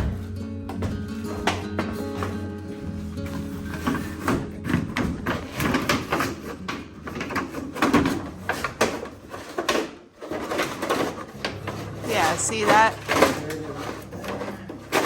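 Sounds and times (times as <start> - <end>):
objects knocking and clattering: 0.0 - 15.0.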